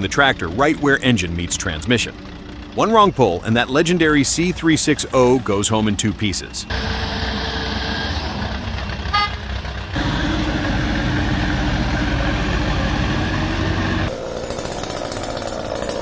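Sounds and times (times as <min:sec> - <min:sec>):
heavy vehicle engine running: 0:00.0 - 0:16.0
hissy machine sound: 0:04.4 - 0:06.3, 0:10.0 - 0:15.4.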